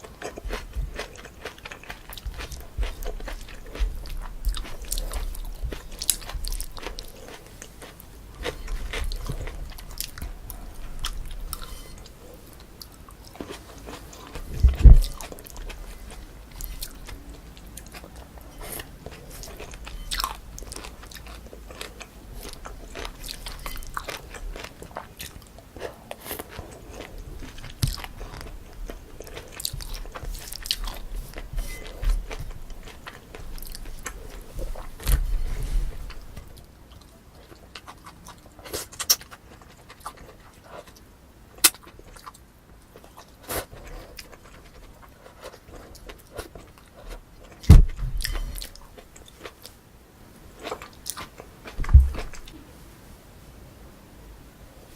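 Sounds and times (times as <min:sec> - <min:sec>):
person chewing noodles: 0:00.0 - 0:49.8, 0:50.6 - 0:52.6
loud low thump: 0:47.7 - 0:48.3, 0:51.8 - 0:52.4.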